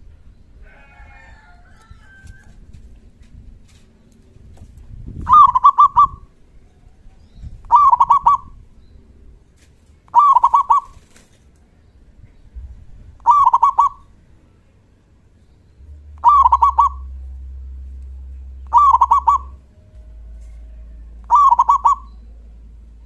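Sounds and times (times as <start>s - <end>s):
dove cooing: 5.2s - 6.3s, 7.6s - 8.6s, 10.1s - 11.2s, 13.2s - 14.1s, 16.2s - 17.2s, 18.6s - 19.6s, 21.2s - 22.2s.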